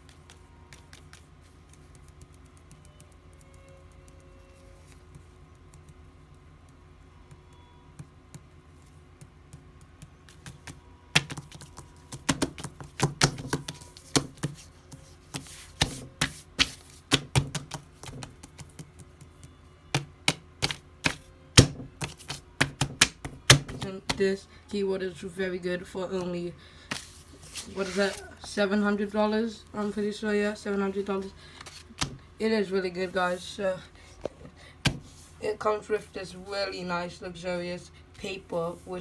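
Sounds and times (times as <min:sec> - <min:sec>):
typing on a keyboard: 0:00.0 - 0:15.1, 0:17.1 - 0:21.3.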